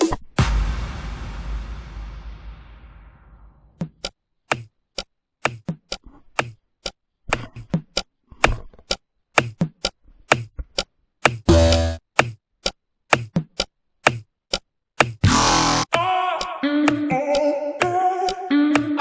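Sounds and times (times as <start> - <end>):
crash: 0.4 - 3.8
sharp knocks with dull thuds: 15.0 - 15.2.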